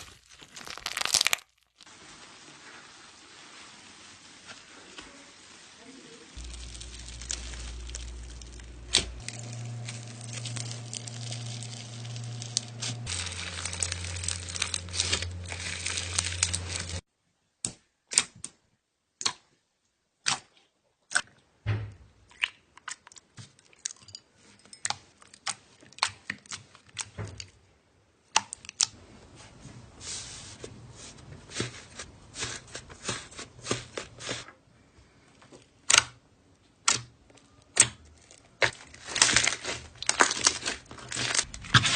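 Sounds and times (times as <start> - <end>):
slime crackling: 0.0 - 17.0, 37.7 - 41.9.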